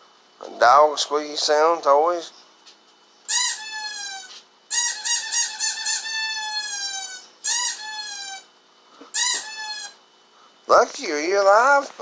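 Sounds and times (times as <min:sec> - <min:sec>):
squeaky dog toy squeaking: 0:03.3 - 0:08.5, 0:09.1 - 0:10.0.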